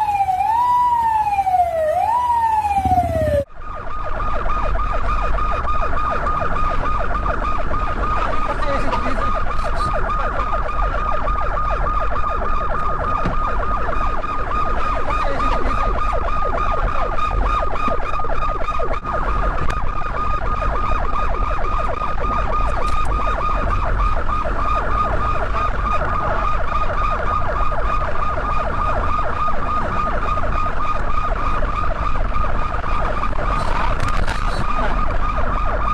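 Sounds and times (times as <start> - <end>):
police siren warbling: 0.0 - 35.9.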